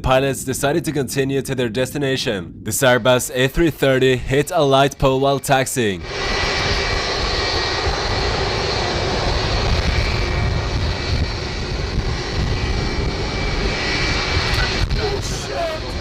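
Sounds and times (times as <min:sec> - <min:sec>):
jet engines running: 0:00.0 - 0:16.0.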